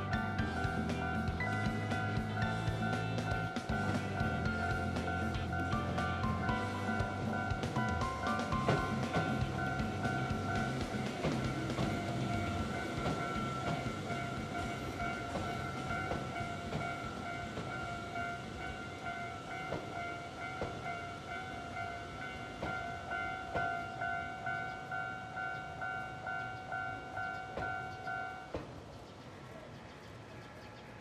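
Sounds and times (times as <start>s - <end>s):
train wheels knocking on rail joints: 0.0s - 24.9s.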